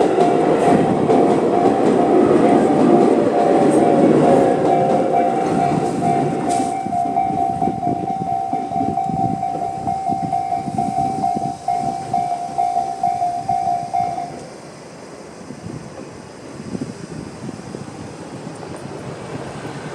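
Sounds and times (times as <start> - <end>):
level crossing warning bell: 0.0 - 14.5
train wheels rumbling and clacking: 0.0 - 19.9.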